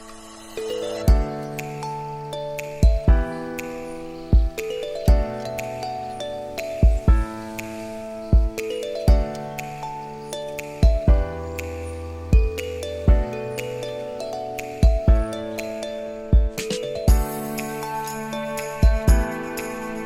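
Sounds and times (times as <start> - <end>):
gentle instrumental music: 0.0 - 20.0
soft bell-like melody: 0.0 - 20.0
deep beat: 4.3 - 5.3, 6.8 - 7.3, 8.3 - 9.3, 12.3 - 13.3, 14.8 - 15.4, 16.4 - 17.6, 18.8 - 19.5.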